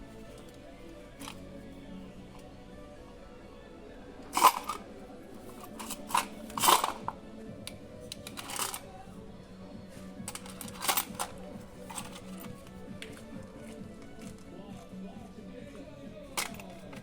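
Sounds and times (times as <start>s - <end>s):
quiet background music: 0.0s - 17.0s
metal engine parts clinking: 1.2s - 1.4s, 4.3s - 7.2s, 8.1s - 8.8s, 10.2s - 12.8s, 16.3s - 17.0s.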